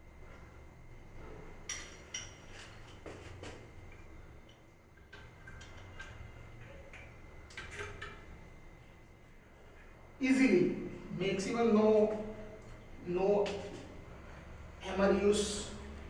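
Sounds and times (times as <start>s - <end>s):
low steady hum: 0.0s - 16.0s
plumbing fittings clinking: 1.7s - 3.2s, 4.0s - 8.4s.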